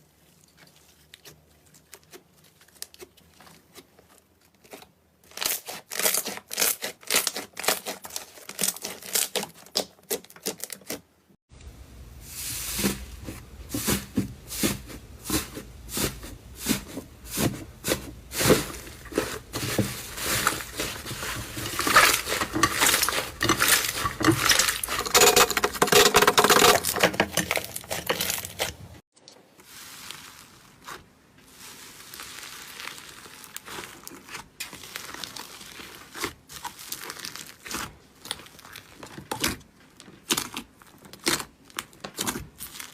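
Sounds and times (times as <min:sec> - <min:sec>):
slime crackling and popping: 0:01.1 - 0:11.0, 0:17.4 - 0:25.2, 0:29.7 - 0:42.9.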